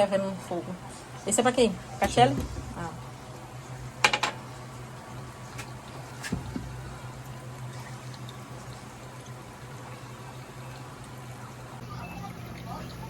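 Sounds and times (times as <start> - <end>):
pot of water boiling: 0.0 - 13.0
light knocks: 2.0 - 3.0, 5.6 - 7.0.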